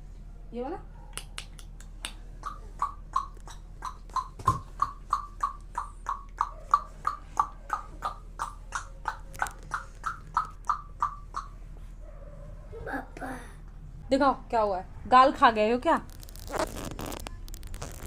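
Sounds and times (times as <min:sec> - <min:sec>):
child tongue clicks: 0:01.1 - 0:11.5.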